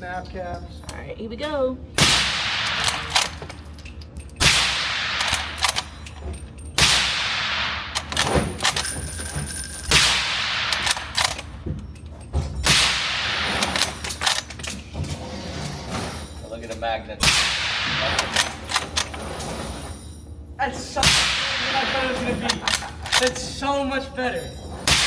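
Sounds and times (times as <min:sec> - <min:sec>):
suppressed rifle shots echoing: 0:02.0 - 0:03.3.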